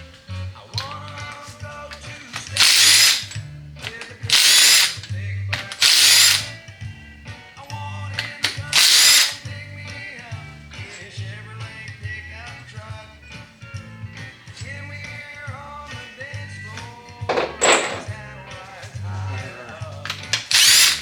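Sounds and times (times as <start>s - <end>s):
background music: 0.0s - 21.0s
powered ratchet spinning: 2.5s - 3.4s, 4.3s - 5.0s, 5.7s - 6.6s, 8.6s - 9.4s, 20.1s - 21.0s.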